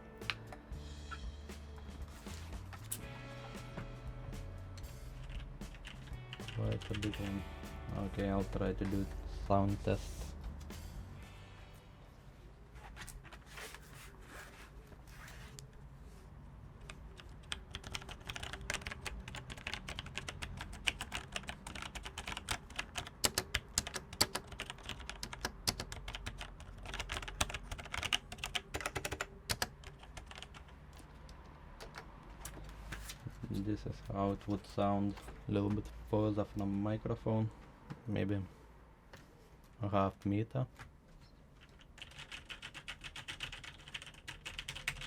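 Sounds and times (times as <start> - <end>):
mechanical keyboard typing: 5.2 - 7.4, 16.9 - 30.8, 41.6 - 45.0.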